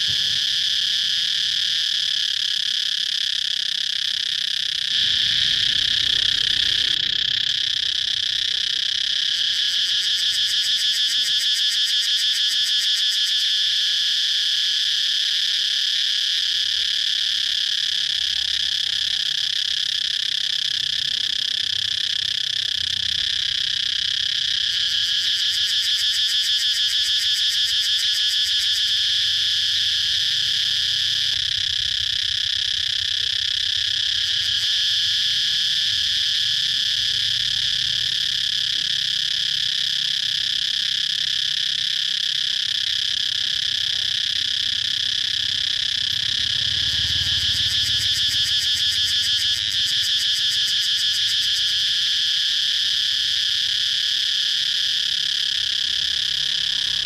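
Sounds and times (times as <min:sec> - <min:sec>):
cicadas chirping: 0:00.0 - 0:57.0.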